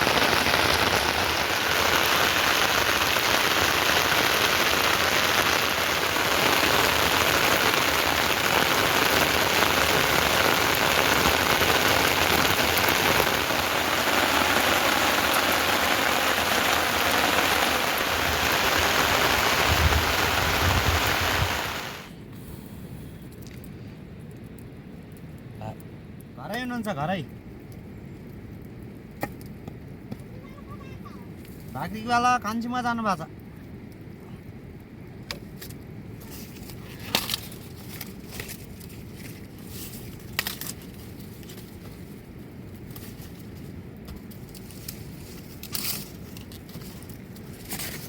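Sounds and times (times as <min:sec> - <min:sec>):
heavy rain falling: 0:00.0 - 0:22.1.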